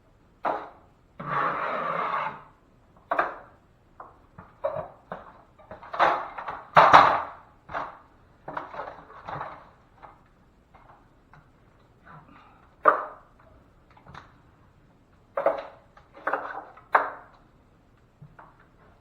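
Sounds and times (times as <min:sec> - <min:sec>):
drywall knife scraping compound: 0:00.5 - 0:02.6.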